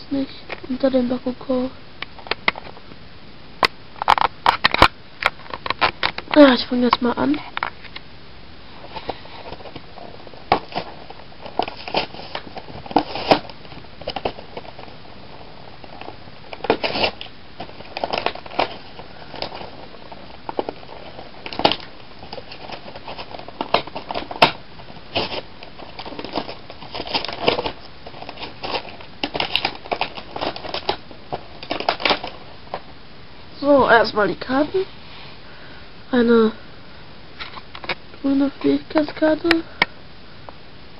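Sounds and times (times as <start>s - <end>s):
packaging crackling and crinkling: 3.6s - 8.0s, 8.7s - 33.0s
packaging tearing: 8.9s - 32.8s.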